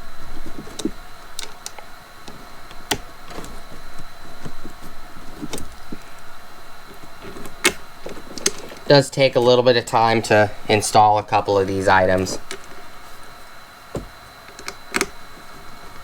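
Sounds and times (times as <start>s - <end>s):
clicks and knocks of plastic parts: 6.9s - 8.9s, 14.0s - 16.0s.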